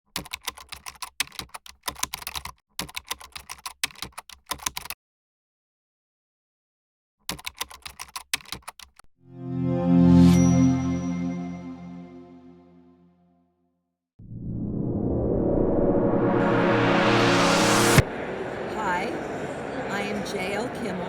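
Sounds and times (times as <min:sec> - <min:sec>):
keyboard typing clicks: 0:00.2 - 0:05.0, 0:07.3 - 0:09.0
sustained musical chord: 0:09.2 - 0:13.3, 0:14.2 - 0:18.4.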